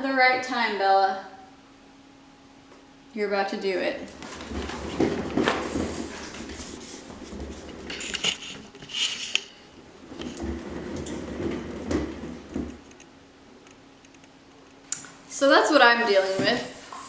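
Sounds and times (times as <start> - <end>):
exercise wheel rolling rumble: 4.1 - 13.0
wheel clattering: 10.0 - 12.9.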